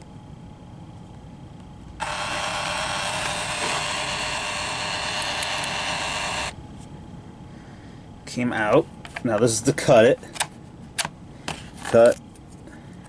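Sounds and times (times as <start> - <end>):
label maker motor whirring: 2.0 - 6.6.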